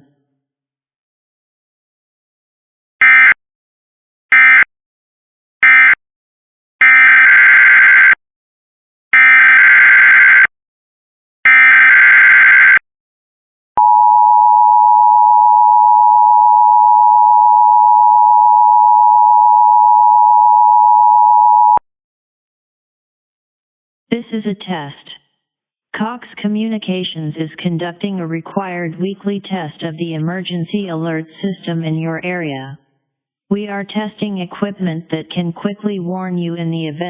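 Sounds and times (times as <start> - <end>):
steady two-tone attention signal: 13.8 - 21.8.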